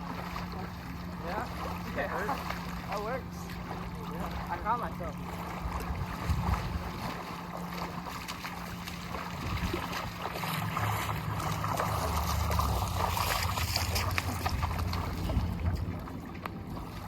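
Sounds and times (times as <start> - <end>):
open water noise: 0.0 - 17.0
wind rumbling on microphone: 5.3 - 8.3, 9.0 - 17.0.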